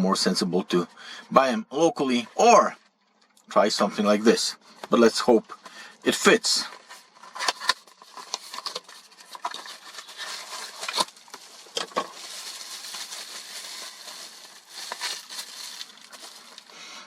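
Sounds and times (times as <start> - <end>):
packaging rustling and crinkling: 6.7 - 17.0.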